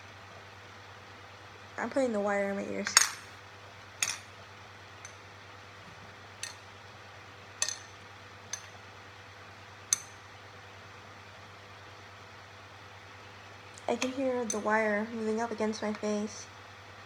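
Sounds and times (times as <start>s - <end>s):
metal utensil clinking: 2.8s - 3.3s, 4.0s - 4.3s, 6.4s - 6.6s, 7.6s - 8.8s, 14.0s - 14.8s.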